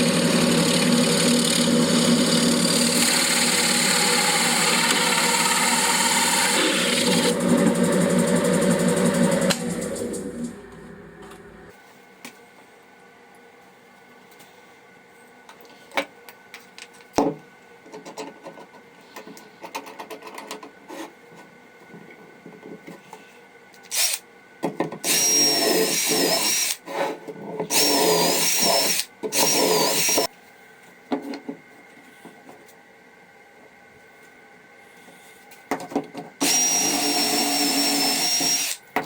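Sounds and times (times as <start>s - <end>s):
handheld power tool whining: 0.0s - 10.5s, 25.0s - 26.8s, 27.7s - 30.3s, 36.4s - 38.8s.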